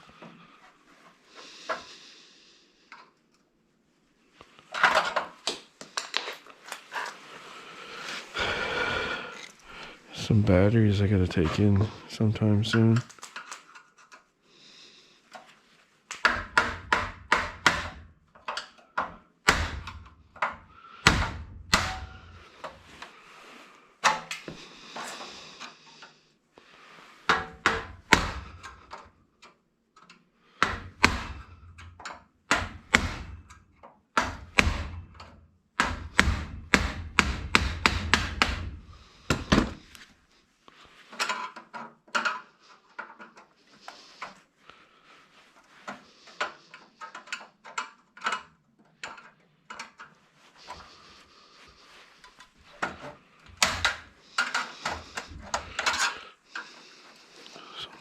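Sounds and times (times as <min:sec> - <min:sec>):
hand tools knocking on electronics: 0:16.2 - 0:18.0, 0:34.2 - 0:39.8.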